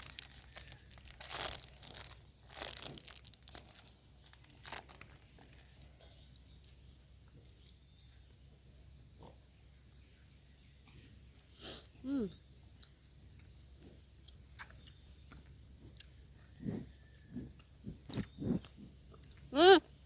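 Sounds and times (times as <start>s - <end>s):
wrapper tearing and crinkling: 0.0s - 5.8s.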